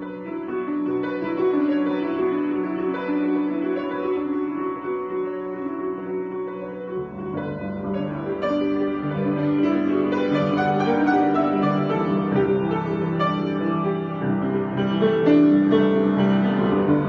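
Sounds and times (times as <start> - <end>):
solo piano improvisation: 0.0 - 17.0.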